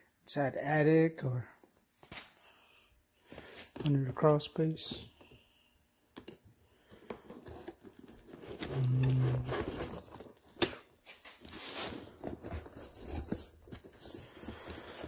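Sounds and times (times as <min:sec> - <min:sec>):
tools clinking and scraping: 0:07.2 - 0:14.0.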